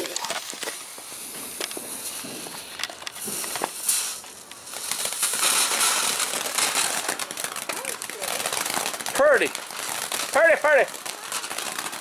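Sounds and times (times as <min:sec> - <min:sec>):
firework hissing and crackling: 0:00.0 - 0:12.0.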